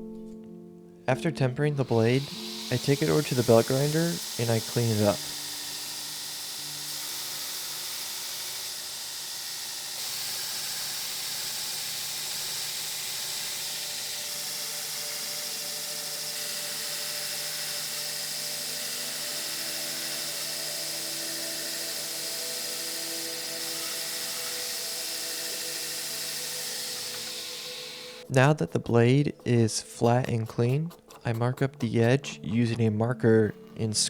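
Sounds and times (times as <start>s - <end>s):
belt grinder grinding steel: 1.8s - 28.3s.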